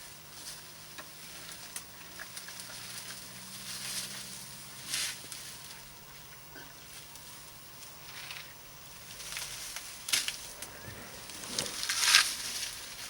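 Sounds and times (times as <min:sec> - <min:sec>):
leaves rustling: 0:00.0 - 0:13.0
low steady hum: 0:00.0 - 0:13.0
twigs snapping: 0:09.2 - 0:13.0.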